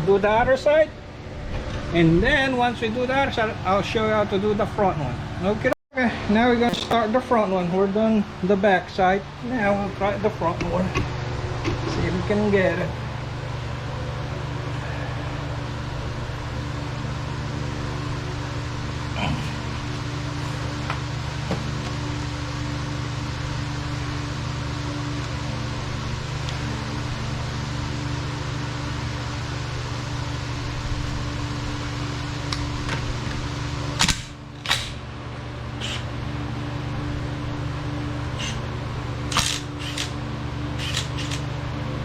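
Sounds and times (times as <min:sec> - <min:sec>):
low mechanical hum: 0:00.0 - 0:42.0
tools clicking and knocking: 0:35.8 - 0:36.0, 0:38.4 - 0:38.6, 0:39.3 - 0:40.2, 0:40.8 - 0:41.4.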